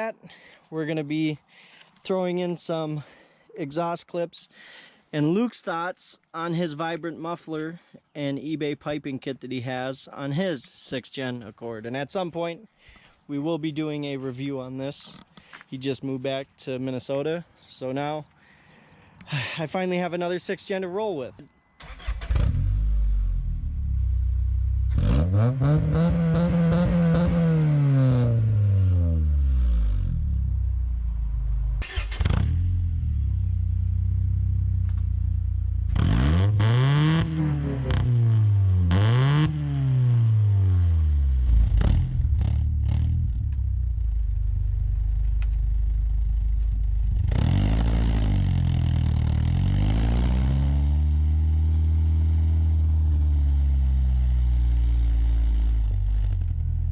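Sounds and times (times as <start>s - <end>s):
car engine idling and revving: 21.9s - 56.9s.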